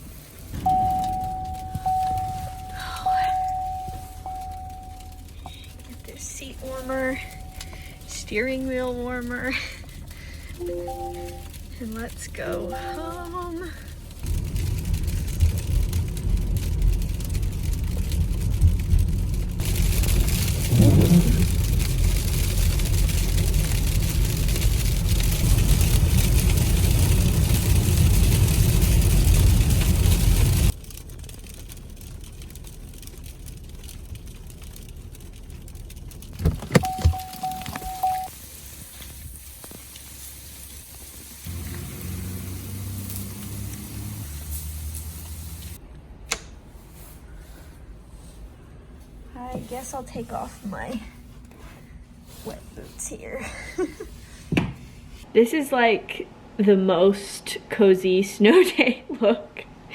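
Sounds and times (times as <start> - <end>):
low motor hum: 0.0 - 38.3, 41.1 - 45.8
car engine and road noise: 0.0 - 53.3
electronic chime: 0.7 - 5.3, 10.6 - 11.5
car knocks and clunks: 36.3 - 38.0, 54.5 - 54.9
hiss: 38.3 - 45.8.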